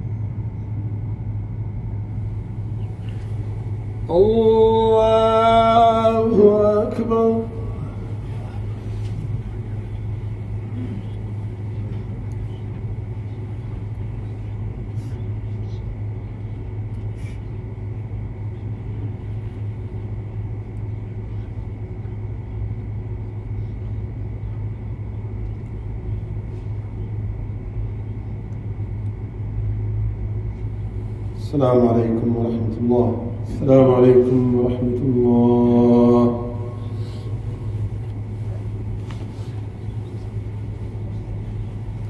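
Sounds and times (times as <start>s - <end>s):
low hum and rumble: 0.0s - 42.0s.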